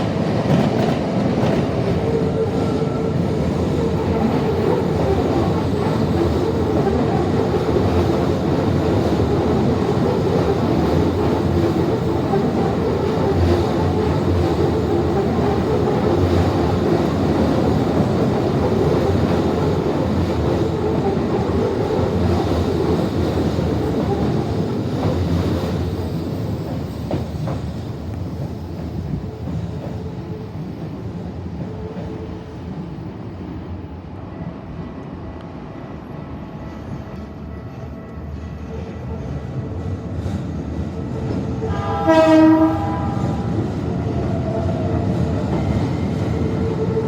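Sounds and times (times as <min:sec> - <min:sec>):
train wheels rumbling on rail: 0:00.0 - 0:47.0.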